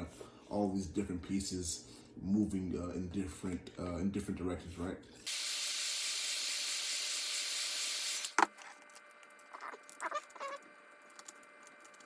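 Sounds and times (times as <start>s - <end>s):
heat gun hissing: 5.3s - 8.4s.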